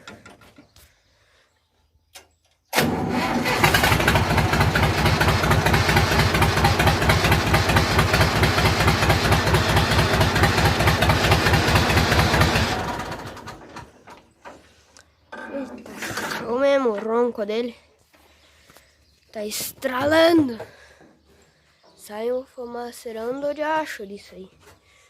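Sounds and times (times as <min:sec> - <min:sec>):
tractor engine running loud: 0:02.8 - 0:13.9.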